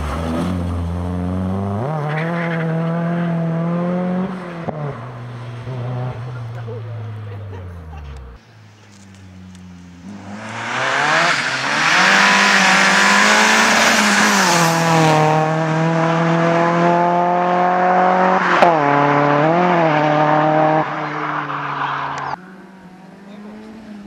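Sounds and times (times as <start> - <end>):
rally car engine at full throttle: 0.0 - 24.0
tyre and road noise: 0.0 - 24.0.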